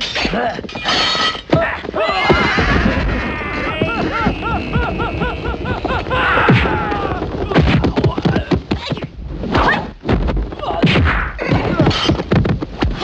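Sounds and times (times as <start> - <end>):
fighters shouting and grunting: 1.5 - 9.9
punch and kick impacts: 7.4 - 8.4, 9.5 - 13.0.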